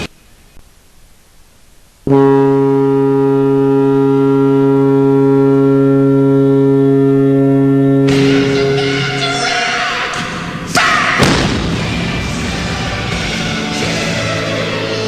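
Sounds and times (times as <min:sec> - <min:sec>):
goal horn blast: 0:02.1 - 0:11.7.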